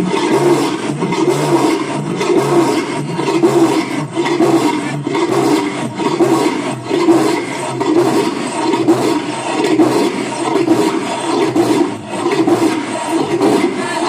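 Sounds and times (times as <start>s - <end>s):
heavily distorted dj music: 13.0s - 14.0s.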